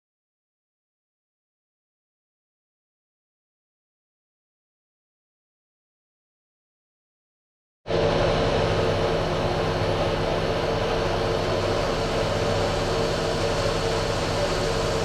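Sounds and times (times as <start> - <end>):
engine running: 7.9 - 15.0.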